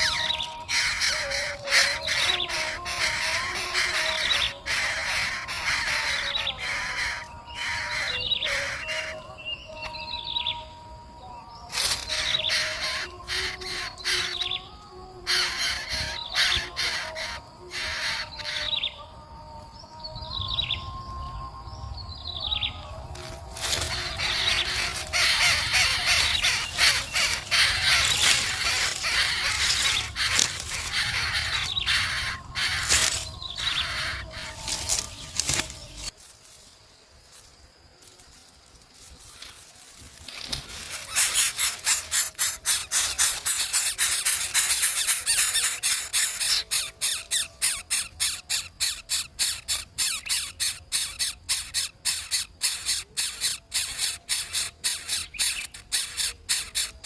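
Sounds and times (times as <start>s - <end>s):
birds chirping and calling: 0.0s - 36.2s, 39.3s - 57.0s
wings rustling and flapping: 23.1s - 31.7s.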